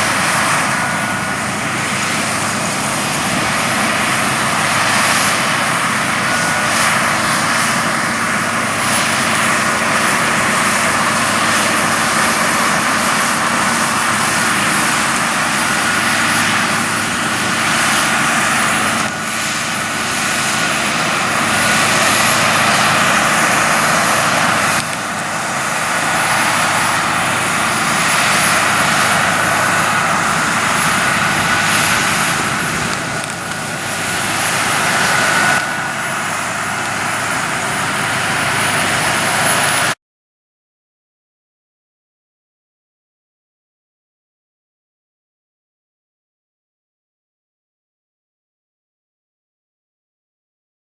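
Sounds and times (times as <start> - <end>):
combine harvester drone: 0.0 - 40.0
high whine: 0.0 - 40.0.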